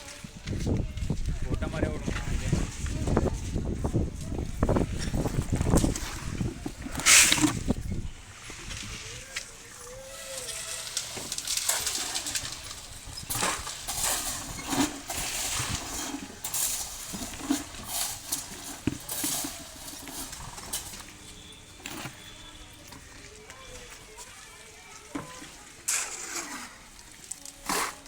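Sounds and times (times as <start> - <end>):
hand tools scraping and knocking: 5.0 - 8.0, 8.6 - 23.2, 25.1 - 28.0.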